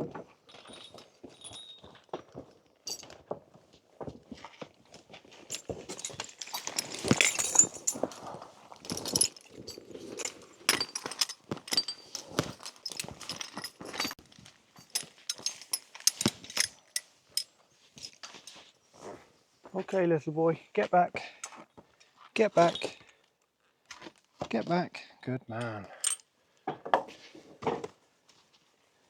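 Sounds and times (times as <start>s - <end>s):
metal harness fittings clinking: 0.5s - 2.1s, 5.5s - 14.2s, 14.8s - 18.6s, 22.5s - 23.1s, 25.6s - 26.2s.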